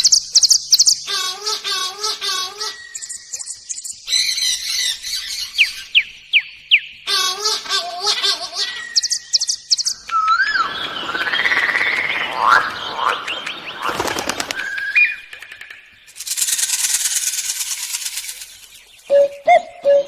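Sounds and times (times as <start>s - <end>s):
bird chorus: 0.0s - 20.0s
birds chirping: 0.0s - 20.0s
whistled bird glides: 8.8s - 15.3s
high rattling trill: 16.1s - 18.7s.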